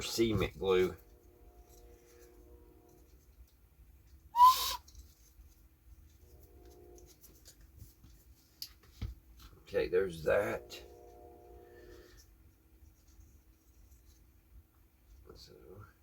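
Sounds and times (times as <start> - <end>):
faint handling noise: 4.8 - 9.8.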